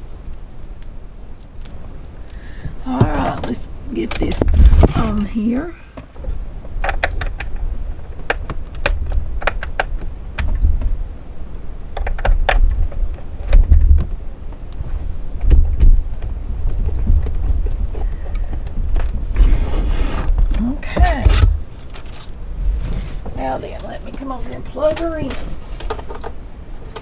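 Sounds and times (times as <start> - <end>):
low thumps and rumble: 1.7 - 26.4
sharp clicks and knocks: 6.0 - 11.0, 12.0 - 19.5.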